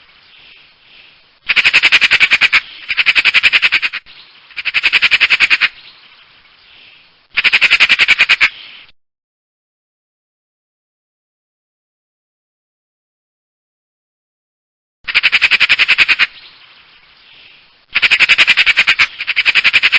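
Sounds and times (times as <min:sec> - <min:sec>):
magpie chattering: 0:01.5 - 0:05.8, 0:07.4 - 0:08.6, 0:15.1 - 0:16.4, 0:18.0 - 0:19.9.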